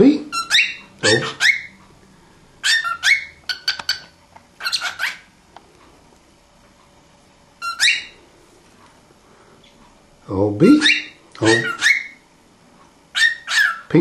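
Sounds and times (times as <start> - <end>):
cockatiel chirping: 0.3 - 1.8, 2.6 - 5.3, 7.6 - 8.2, 10.8 - 12.2, 13.1 - 13.9.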